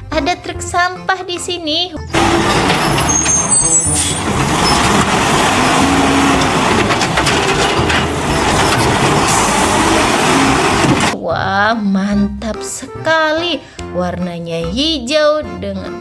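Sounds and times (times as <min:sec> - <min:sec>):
garbage truck engine and machinery: 0:00.0 - 0:11.6.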